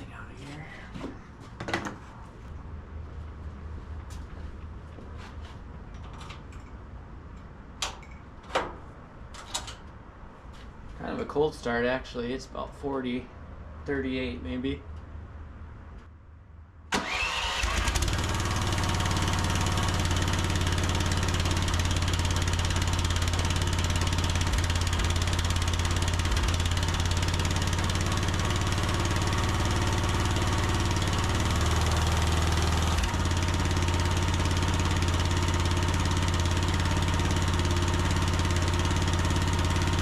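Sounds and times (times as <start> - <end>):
small gasoline engine starting and running: 17.0 - 40.0.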